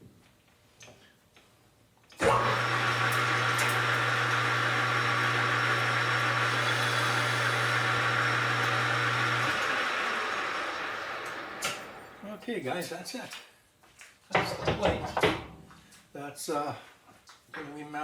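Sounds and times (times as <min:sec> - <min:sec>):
electric motor whirring: 0:02.2 - 0:12.2.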